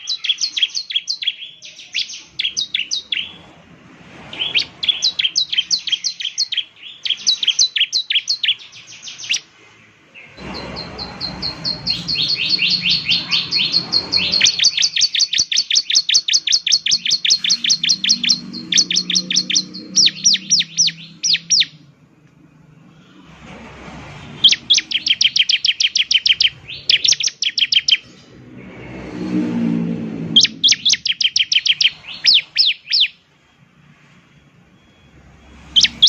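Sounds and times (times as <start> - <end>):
bird singing chirps and trills: 0.0 - 3.5, 4.3 - 9.5, 10.2 - 21.9, 24.4 - 28.7, 30.0 - 33.3, 35.6 - 36.0.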